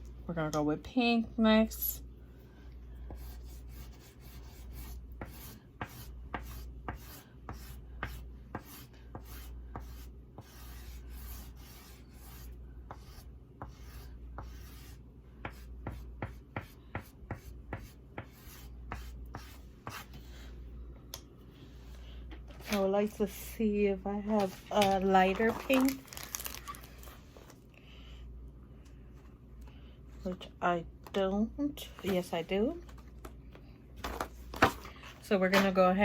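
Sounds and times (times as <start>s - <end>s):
low steady hum: 0.0s - 36.0s
oil pastel scratching on paper: 3.1s - 20.1s.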